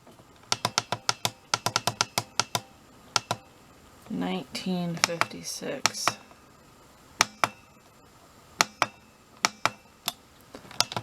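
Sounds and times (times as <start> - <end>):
controller button clicks: 0.5 - 3.5, 4.9 - 6.4, 8.6 - 11.0.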